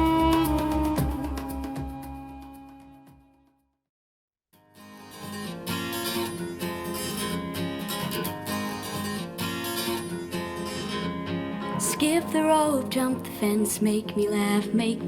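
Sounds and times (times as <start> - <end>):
strummed acoustic guitar song: 0.0 - 2.3, 4.6 - 15.0
music: 0.0 - 3.8, 4.6 - 15.0.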